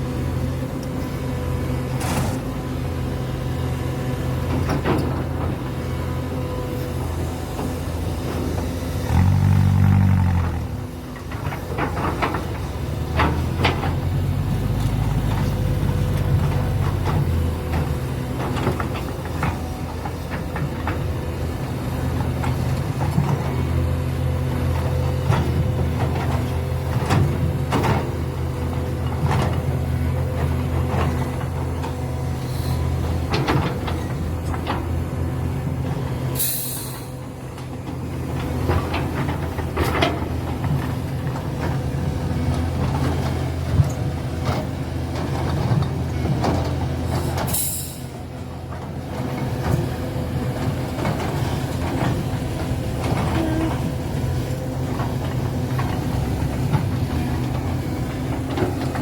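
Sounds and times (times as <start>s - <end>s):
excavator diesel engine running: 0.0s - 59.0s
short hydraulic hisses: 32.4s - 32.8s, 36.4s - 37.1s, 47.5s - 48.1s.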